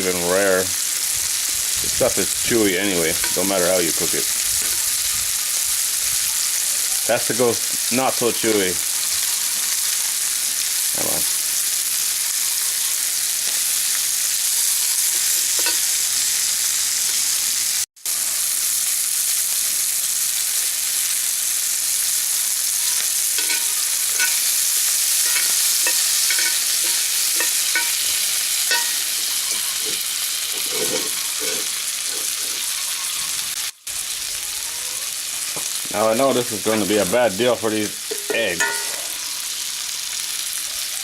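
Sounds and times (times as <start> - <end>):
meat sizzling in a pan: 0.0 - 41.0
utensil scraping a pan: 2.5 - 4.9, 15.1 - 16.0, 23.3 - 33.4.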